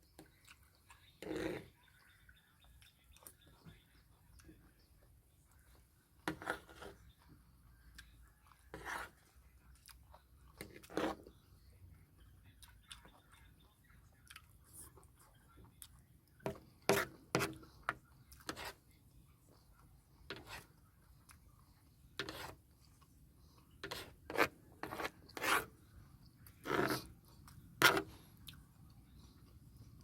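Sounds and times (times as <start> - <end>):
person chewing food: 0.1 - 2.1, 14.1 - 15.1, 22.6 - 30.0.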